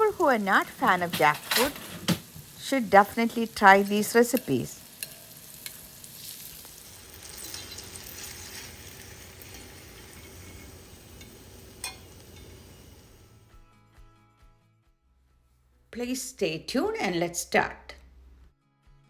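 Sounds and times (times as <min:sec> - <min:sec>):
hot oil sizzling: 0:00.0 - 0:13.4.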